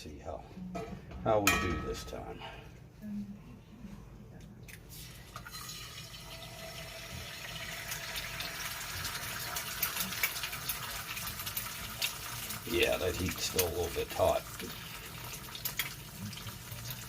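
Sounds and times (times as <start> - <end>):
egg sizzling in fat: 4.9 - 17.0.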